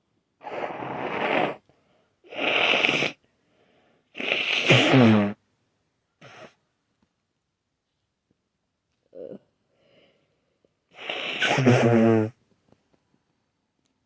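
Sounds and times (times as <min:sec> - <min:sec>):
wet nose blowing: 0:00.4 - 0:01.6, 0:02.3 - 0:03.2, 0:04.2 - 0:05.4, 0:11.0 - 0:12.4.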